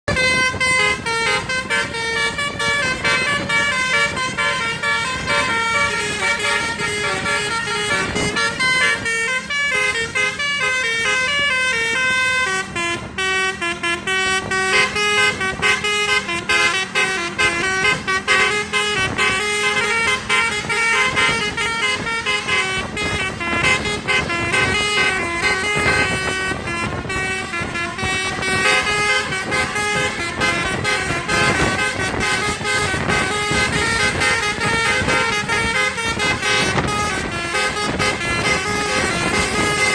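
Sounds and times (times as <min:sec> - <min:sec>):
multi-tone bus horn melody: 0:00.0 - 0:39.9.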